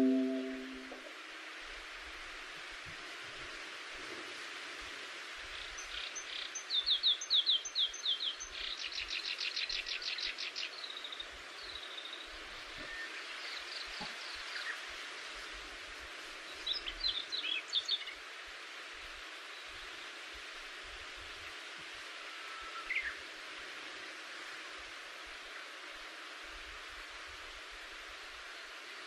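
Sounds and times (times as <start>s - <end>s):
songbird singing: 0.0s - 1.0s
steady outdoor hiss: 0.0s - 29.0s.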